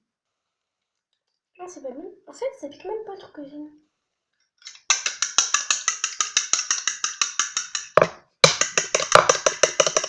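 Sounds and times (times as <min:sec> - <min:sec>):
fork beating eggs in bowl: 0:04.8 - 0:08.0.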